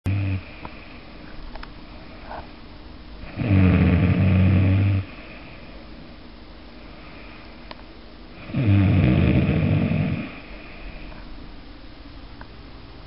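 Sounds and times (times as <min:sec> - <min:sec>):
loud low snoring: 0:00.1 - 0:00.5, 0:03.2 - 0:05.2, 0:08.4 - 0:10.5.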